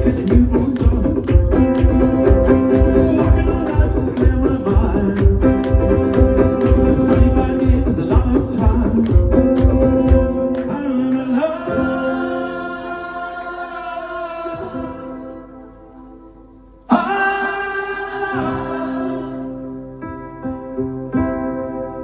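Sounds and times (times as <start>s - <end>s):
steady beat: 0.0s - 10.5s.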